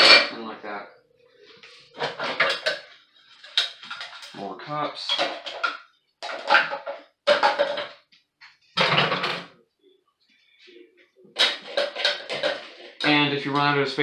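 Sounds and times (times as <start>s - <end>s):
cups clattering in dishwasher rack: 0.0s - 0.4s, 2.0s - 4.4s, 5.0s - 8.0s, 8.8s - 9.5s, 11.4s - 13.2s.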